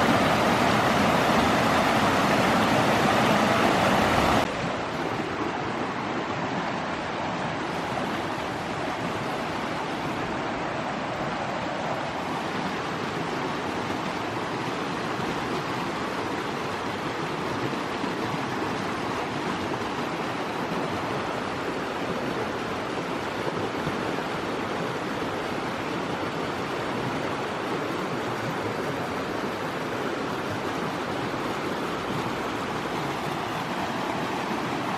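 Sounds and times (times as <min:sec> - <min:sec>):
creek water rushing: 0:00.0 - 0:34.9.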